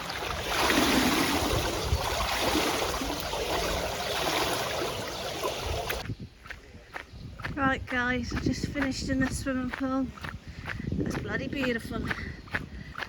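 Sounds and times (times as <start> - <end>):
pool water splashing: 0.0 - 6.0.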